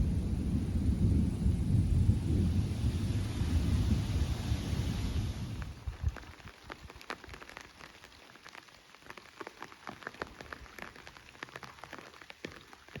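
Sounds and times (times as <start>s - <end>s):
thunder rumble: 0.0s - 6.2s
faint rain hiss: 0.0s - 13.0s
raindrops tapping on hard surface: 5.6s - 13.0s.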